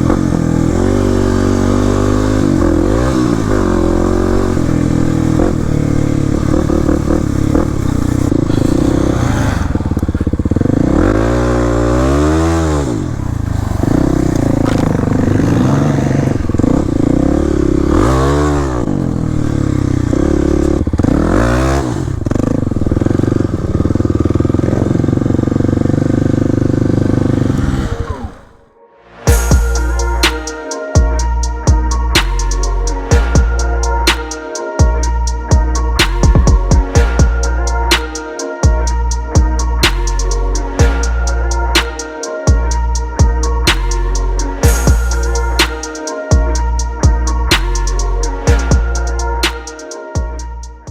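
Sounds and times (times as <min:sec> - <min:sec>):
dirt bike engine revving: 0:00.0 - 0:28.7.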